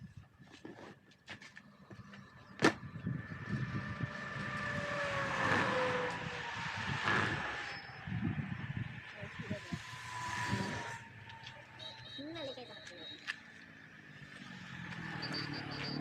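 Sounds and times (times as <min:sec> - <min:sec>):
vehicle passing by: 0:02.8 - 0:12.1, 0:13.7 - 0:16.0.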